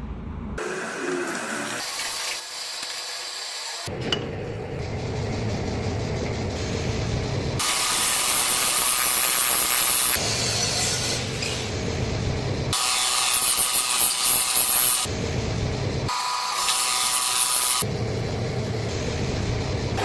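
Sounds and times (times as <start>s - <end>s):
low hum: 0.0s - 0.6s, 3.9s - 8.7s, 15.1s - 16.1s, 17.8s - 20.0s.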